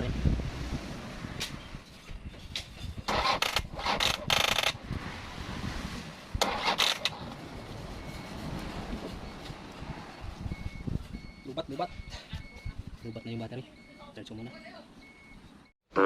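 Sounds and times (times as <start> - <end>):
diesel starter cranking: 2.6 - 4.8, 6.3 - 8.2.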